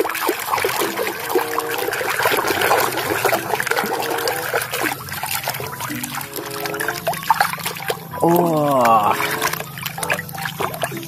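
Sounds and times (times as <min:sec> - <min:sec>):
water trickling and splashing: 0:00.0 - 0:11.0.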